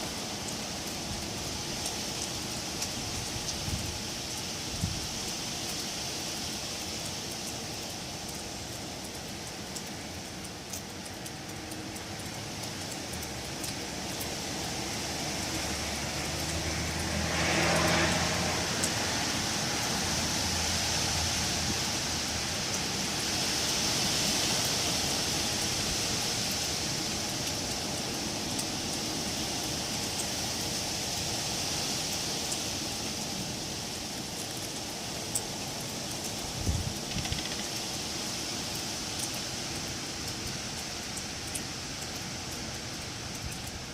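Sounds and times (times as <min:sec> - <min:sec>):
wind blowing through trees: 0:00.0 - 0:43.9.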